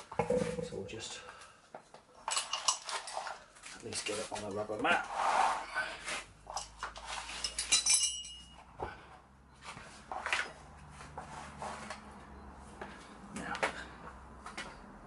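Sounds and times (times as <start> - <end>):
metal clinks and knocks: 2.2 - 3.4, 6.5 - 8.8
metallic ring: 6.6 - 8.7.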